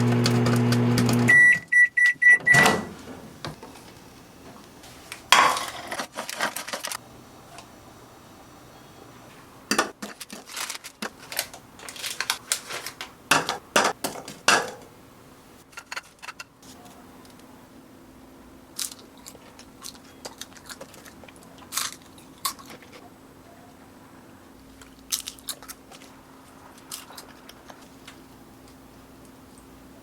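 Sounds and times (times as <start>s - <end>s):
crispy snacks cracking on a dish: 5.1s - 7.0s, 10.0s - 13.2s, 18.7s - 23.0s, 24.7s - 29.6s.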